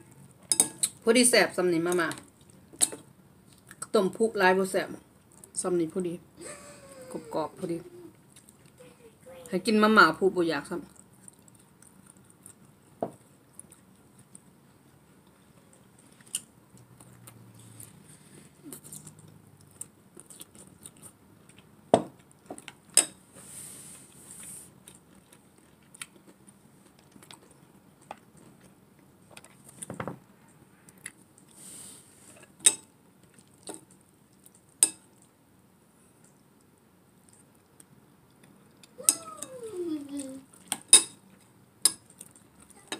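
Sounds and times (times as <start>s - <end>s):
cutlery clicking against bowl: 0.5s - 1.0s, 34.8s - 35.0s, 40.7s - 41.2s
soft chewing: 2.2s - 2.8s, 3.4s - 4.0s, 5.0s - 5.6s, 7.8s - 9.5s, 10.7s - 22.9s, 23.9s - 42.9s.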